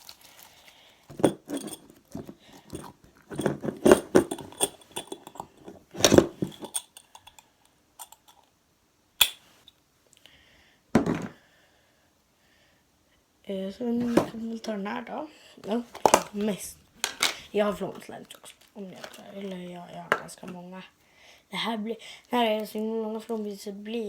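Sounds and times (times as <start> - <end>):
slime squishing and crackling: 0.0 - 0.8.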